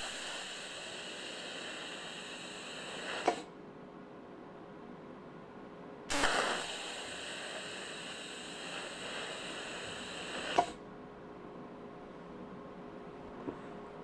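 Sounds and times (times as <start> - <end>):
welder click: 0.0 - 3.5, 6.1 - 10.8
welding arc hissing: 0.0 - 3.5, 6.1 - 10.8.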